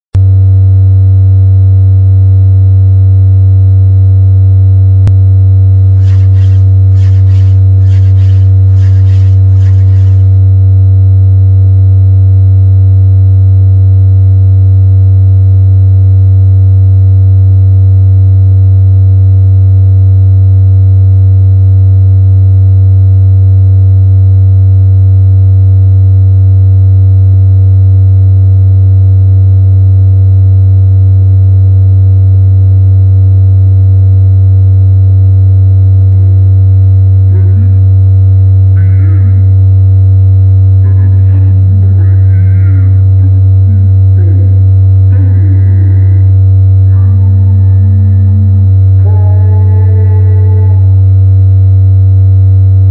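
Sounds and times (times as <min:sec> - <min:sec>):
low electronic drone tone: 0:00.2 - 0:20.2, 0:32.7 - 0:52.8
rhythmic hissing pulses: 0:05.8 - 0:10.4, 0:40.9 - 0:50.9.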